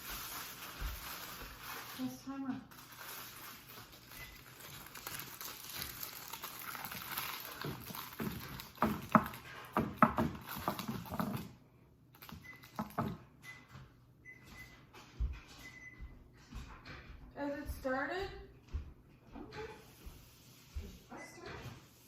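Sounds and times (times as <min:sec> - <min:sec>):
oven control panel beeps: 0:13.4 - 0:14.8, 0:15.6 - 0:16.0.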